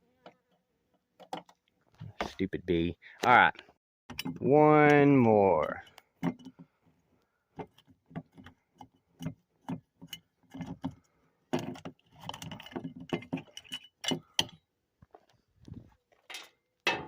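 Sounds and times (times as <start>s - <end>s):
metal screws clinking: 11.6s - 14.6s.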